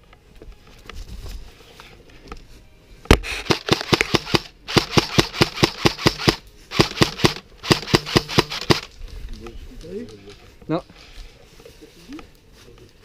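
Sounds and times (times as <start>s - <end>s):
airsoft rifle rapid shots: 3.2s - 8.9s.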